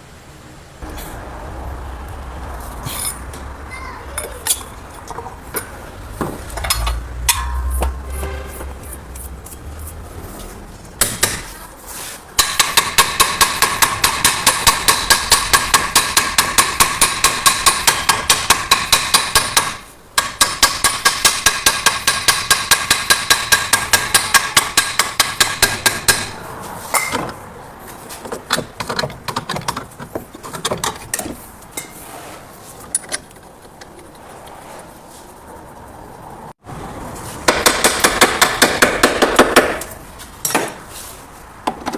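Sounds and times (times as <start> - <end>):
hammer striking metal: 3.0 - 9.3, 11.0 - 11.6, 12.4 - 27.3.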